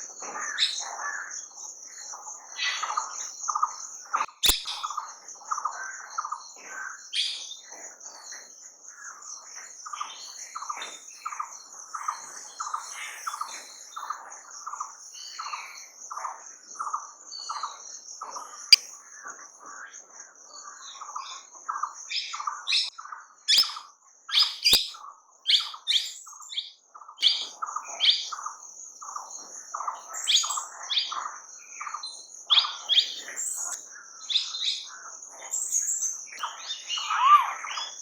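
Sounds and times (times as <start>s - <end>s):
birds calling: 2.6s - 7.8s, 20.6s - 38.0s
sharp clicks: 4.4s - 4.8s, 23.5s - 23.8s, 24.6s - 25.0s
high insect buzz: 23.5s - 23.8s, 24.5s - 25.0s.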